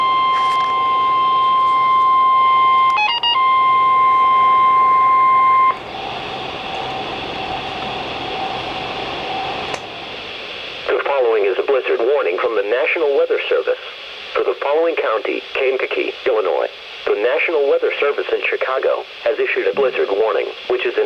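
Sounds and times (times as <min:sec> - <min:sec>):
loud steady alarm tone: 0:00.0 - 0:11.0
radio hiss: 0:05.7 - 0:21.0.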